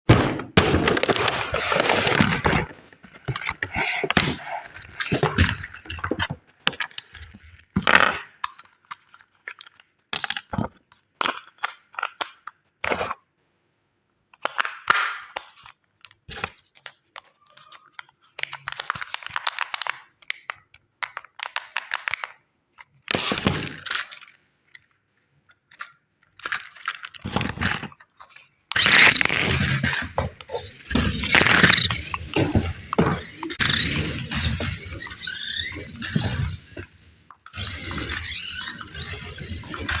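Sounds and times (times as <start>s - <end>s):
packaging crinkling and tearing: 17.4s - 20.1s, 26.4s - 33.0s.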